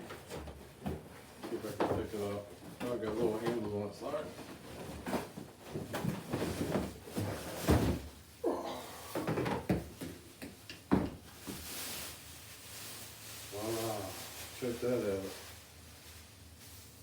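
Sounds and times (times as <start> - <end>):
rustling: 11.2 - 17.0.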